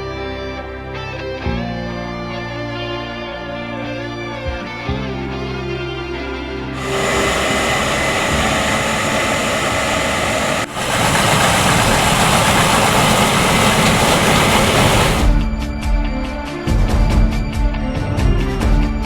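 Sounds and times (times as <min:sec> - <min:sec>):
combine harvester roaring: 0:06.8 - 0:15.4.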